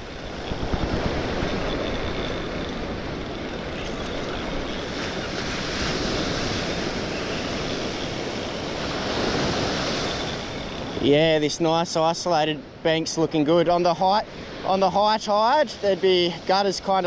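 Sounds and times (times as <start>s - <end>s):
wind rumbling on microphone: 0.0s - 12.0s
surf washing on a beach: 0.0s - 17.0s.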